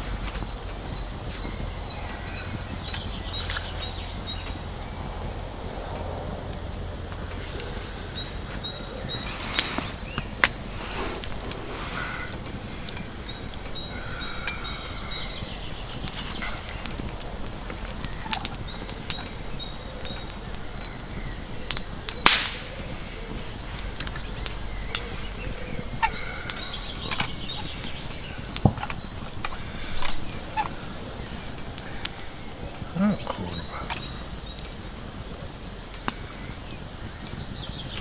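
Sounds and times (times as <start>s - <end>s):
songbird chirping: 0.0s - 38.0s
sharp clicks and snaps: 12.4s - 32.3s.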